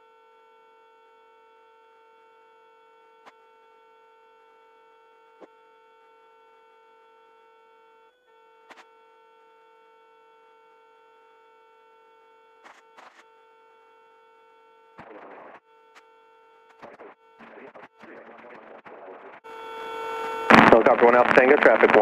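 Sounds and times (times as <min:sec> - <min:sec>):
bursts of static: 0:14.8 - 0:22.0
faint electrical hum: 0:19.5 - 0:22.0
radio clicks: 0:20.2 - 0:22.0.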